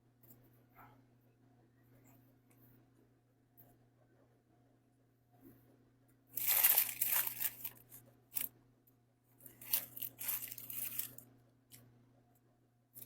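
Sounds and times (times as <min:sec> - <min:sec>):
food packaging crinkling: 0:06.4 - 0:08.5, 0:09.4 - 0:11.2.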